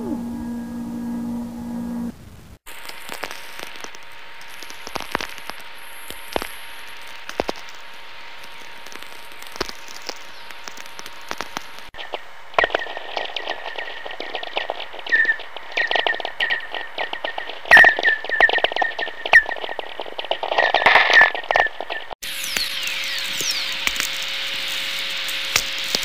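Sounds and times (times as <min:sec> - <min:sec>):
faint steady tone: 0:00.0 - 0:02.2
low steady hum: 0:00.0 - 0:18.2
radio static with crackles: 0:00.0 - 0:26.0.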